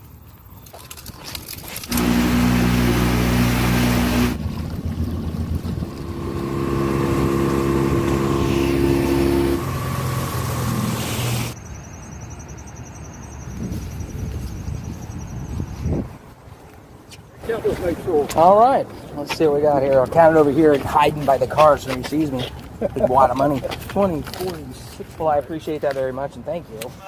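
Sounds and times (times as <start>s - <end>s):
engine running: 1.8s - 11.6s.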